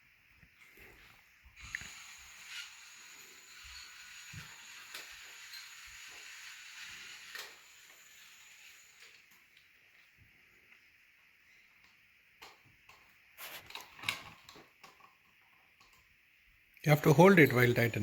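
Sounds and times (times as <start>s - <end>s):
toy drill whirring: 1.6s - 9.7s.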